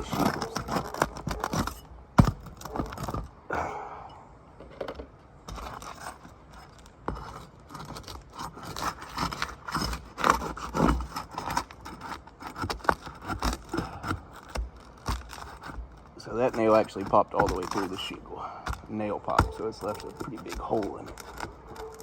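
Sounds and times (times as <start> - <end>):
metal tools scraping shingles: 0.0 - 3.3, 5.4 - 22.0
shingle sealant tearing: 0.0 - 3.4, 5.4 - 22.0.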